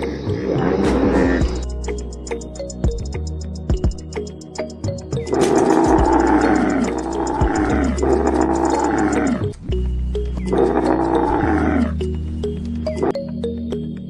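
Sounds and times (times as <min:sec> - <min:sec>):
background music: 0:00.0 - 0:14.0
lion roaring: 0:05.7 - 0:09.5, 0:10.5 - 0:12.0.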